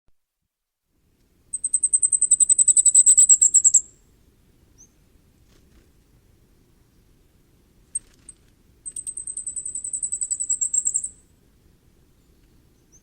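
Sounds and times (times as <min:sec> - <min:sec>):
bird singing high thin notes: 0:01.6 - 0:03.9, 0:08.9 - 0:11.2.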